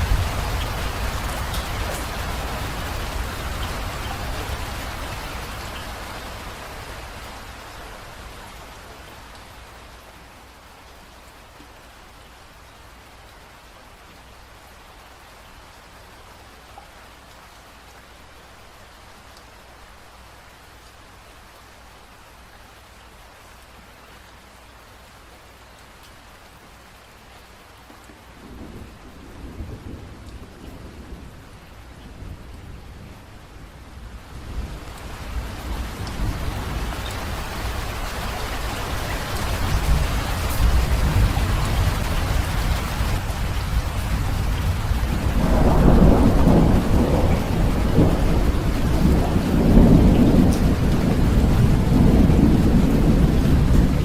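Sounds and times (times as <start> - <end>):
thunder rumbling: 0.0 - 5.0, 28.4 - 54.0
rain falling steadily: 0.0 - 54.0.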